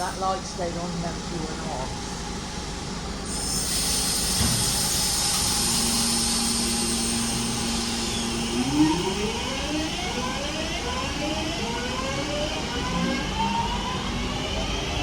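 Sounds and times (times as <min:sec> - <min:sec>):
electric train whine: 0:00.0 - 0:15.0
air hiss: 0:03.3 - 0:08.4.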